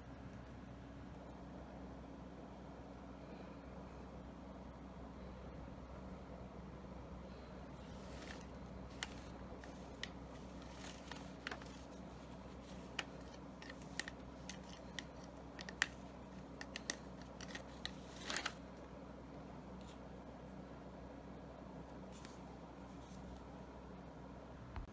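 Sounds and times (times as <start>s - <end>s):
shotgun parts clicking: 8.2s - 18.6s.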